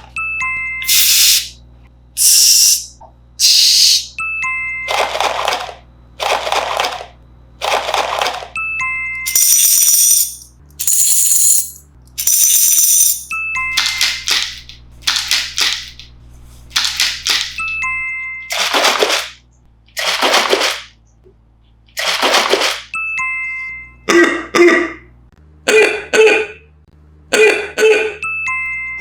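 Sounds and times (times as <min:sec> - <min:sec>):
beatboxed rattling hissing bursts: 0:00.9 - 0:01.6, 0:02.2 - 0:04.1.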